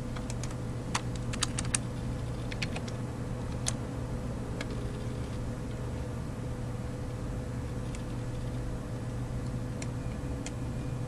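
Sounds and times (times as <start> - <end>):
steady low hum: 0.0 - 11.0
keyboard and mouse clicks: 0.1 - 3.8.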